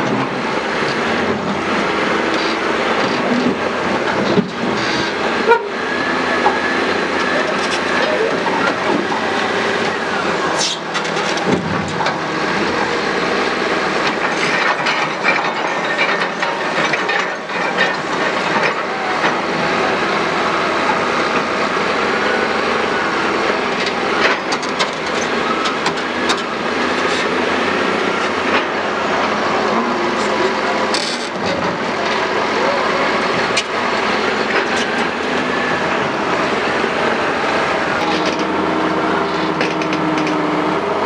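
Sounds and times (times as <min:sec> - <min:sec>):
heavy diesel machinery running: 0:00.0 - 0:41.0
clanks and knocks: 0:10.6 - 0:12.8, 0:14.0 - 0:19.5, 0:39.4 - 0:40.4.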